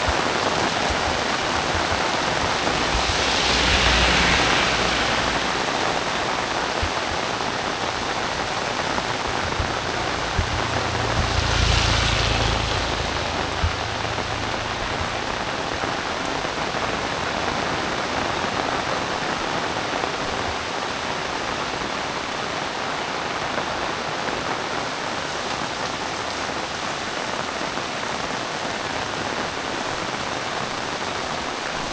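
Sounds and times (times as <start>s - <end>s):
heavy rain pouring: 0.0s - 31.9s
low rumble: 1.1s - 18.0s
drips or knocks: 8.1s - 17.3s.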